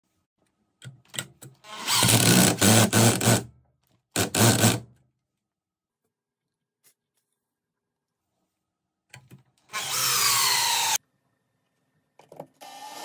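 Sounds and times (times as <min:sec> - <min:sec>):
small electric power tool running: 0:09.7 - 0:11.0.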